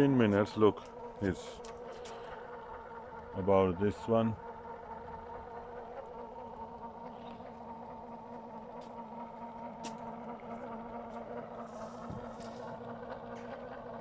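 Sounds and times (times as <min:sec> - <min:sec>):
electric pump humming: 0:00.0 - 0:14.0
faint ticks: 0:00.8 - 0:02.4.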